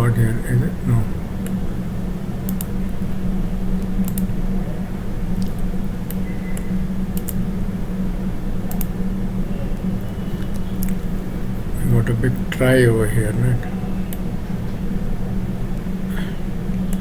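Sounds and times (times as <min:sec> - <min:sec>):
low electrical hum: 0:00.0 - 0:17.0
computer mouse clicks: 0:02.5 - 0:03.2, 0:03.8 - 0:04.4, 0:05.4 - 0:07.4, 0:08.7 - 0:09.0, 0:10.0 - 0:11.0
keyboard clicks: 0:02.5 - 0:03.2, 0:03.8 - 0:04.3, 0:05.4 - 0:07.4, 0:08.7 - 0:09.0.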